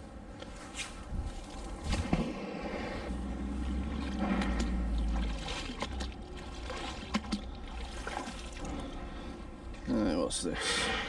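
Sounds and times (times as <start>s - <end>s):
water trickling and sloshing: 0.4s - 10.2s
low rumble: 1.1s - 8.0s.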